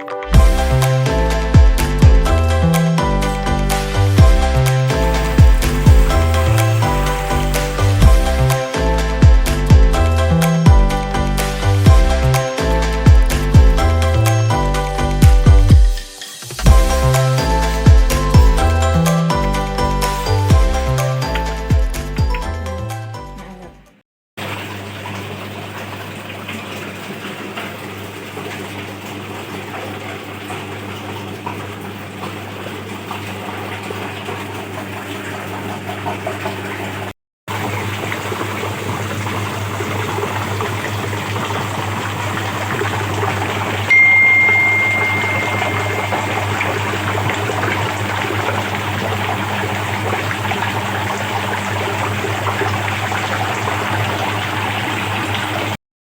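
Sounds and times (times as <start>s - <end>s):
stirrer splashing liquid: 0.0s - 10.2s, 24.4s - 55.8s
mixer motor humming: 3.7s - 10.1s, 37.5s - 55.8s
high steady tone: 5.0s - 8.3s, 43.9s - 47.3s.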